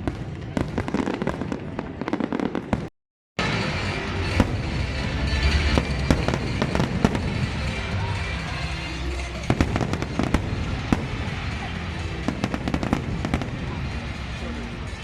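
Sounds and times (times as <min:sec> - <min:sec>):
fireworks cracks and bangs: 0:00.0 - 0:15.0.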